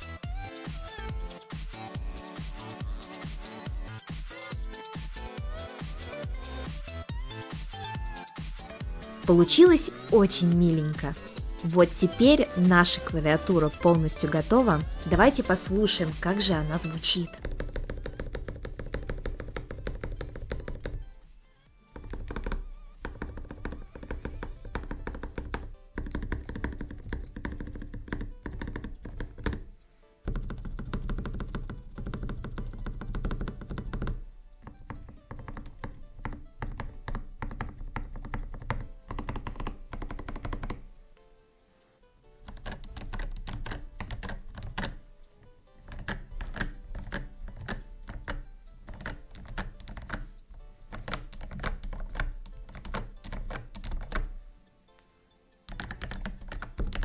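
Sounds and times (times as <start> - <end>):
background music: 0.0 - 57.0
mechanical keyboard typing: 12.8 - 21.0, 22.0 - 29.7, 30.3 - 40.8, 42.4 - 45.0, 45.8 - 50.3, 50.9 - 54.4, 55.7 - 57.0.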